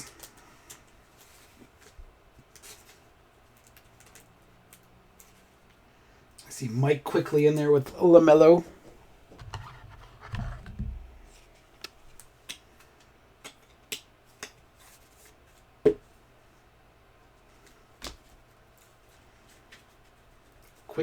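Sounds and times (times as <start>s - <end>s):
cards and packaging clicking: 0.0s - 5.4s.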